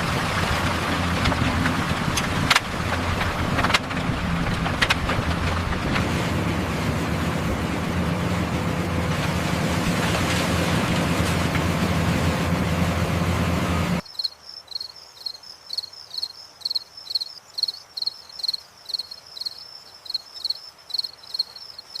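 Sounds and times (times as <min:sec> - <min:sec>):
crickets chirping: 0:14.0 - 0:22.0.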